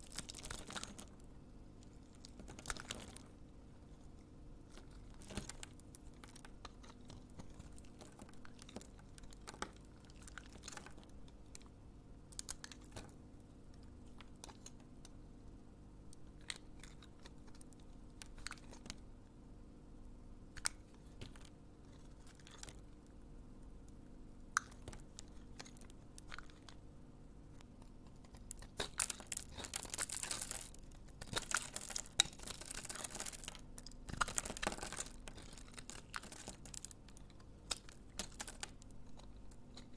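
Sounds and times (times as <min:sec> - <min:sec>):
knife crunching through soap: 0:27.8 - 0:39.9.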